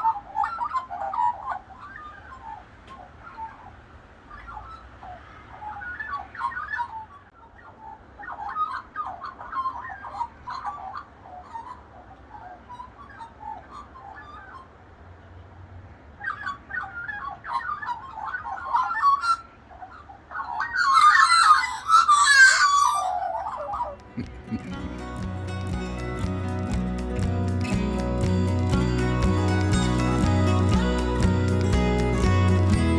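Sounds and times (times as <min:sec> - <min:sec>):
magpies warbling: 0:00.0 - 0:14.7, 0:16.2 - 0:25.0.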